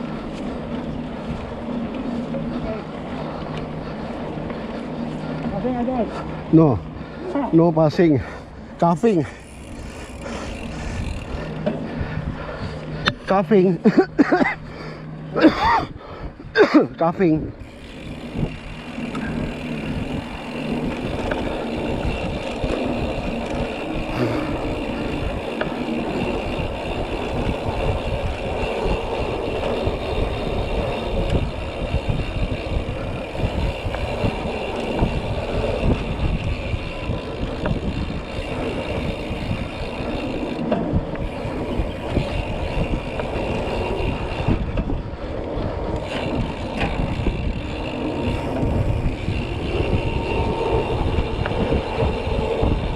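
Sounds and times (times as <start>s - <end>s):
bike tyres rumbling over dirt: 0.0s - 16.3s, 17.2s - 52.9s
bike rattling over bumps: 0.0s - 52.9s
wind on microphone: 9.3s - 13.3s, 17.4s - 52.9s.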